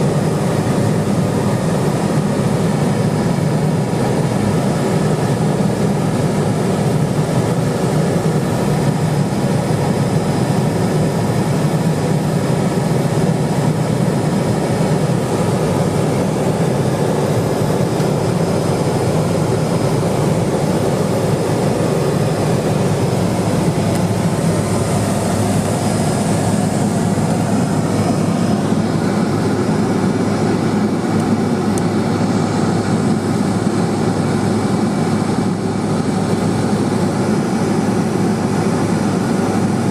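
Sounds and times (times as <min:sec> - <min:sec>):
propeller aircraft engine drone: 0:00.0 - 0:39.9.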